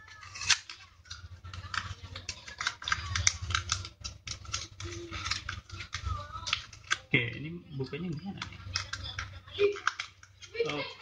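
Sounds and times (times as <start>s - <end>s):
plastic packaging crinkling: 0.0s - 7.1s.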